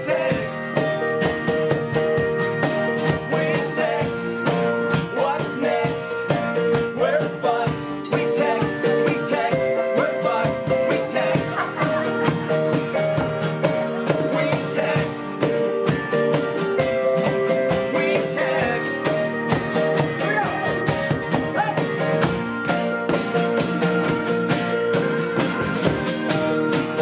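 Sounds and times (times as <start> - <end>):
person singing: 0.0 - 0.9, 3.1 - 13.0, 13.6 - 15.7, 17.4 - 22.3
hand percussion beat: 0.0 - 27.0
strummed guitar chords: 0.0 - 27.0.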